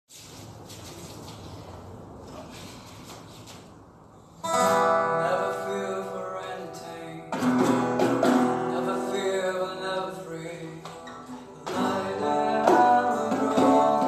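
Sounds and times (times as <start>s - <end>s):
guitar chords strummed: 4.4s - 14.0s.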